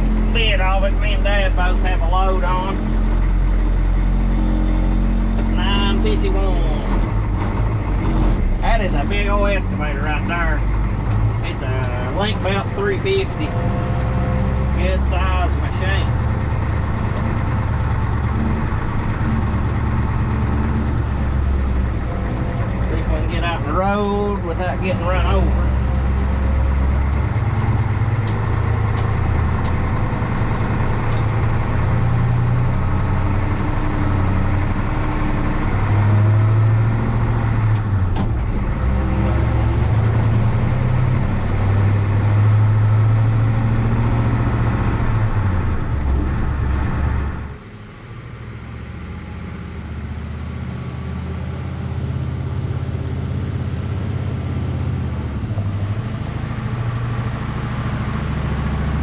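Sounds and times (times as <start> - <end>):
truck engine running: 0.0 - 59.0.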